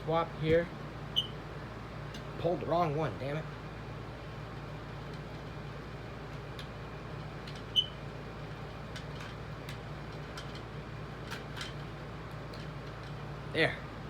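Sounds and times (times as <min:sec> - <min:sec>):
fan hum: 0:00.0 - 0:14.0
smoke alarm chirp: 0:07.7 - 0:08.0.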